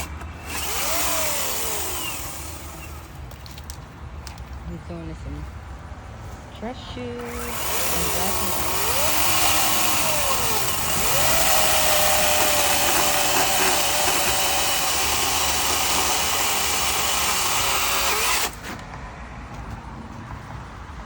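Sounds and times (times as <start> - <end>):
chainsaw cutting at high revs: 0.0 - 3.0, 7.2 - 18.8.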